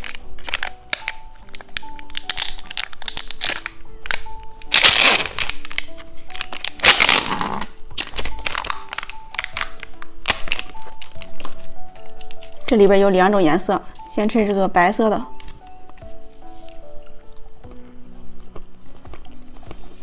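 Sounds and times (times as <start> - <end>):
wrapper tearing: 0.0 - 12.7, 15.3 - 15.7
plastic wrapper crinkling: 0.0 - 14.1, 15.3 - 17.5
light background music: 0.0 - 20.0.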